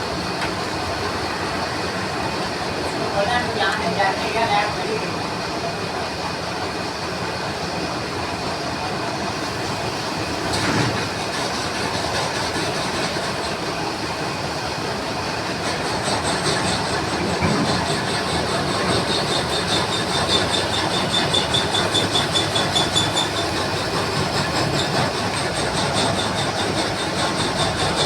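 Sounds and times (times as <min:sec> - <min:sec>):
metal lathe clattering: 0:15.5 - 0:28.0.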